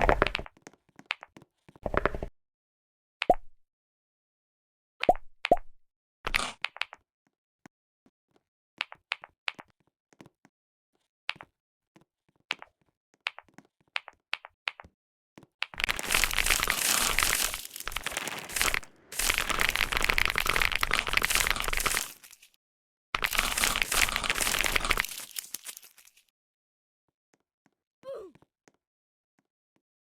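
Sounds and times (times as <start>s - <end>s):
computer keyboard typing: 15.6s - 22.5s, 23.2s - 26.2s.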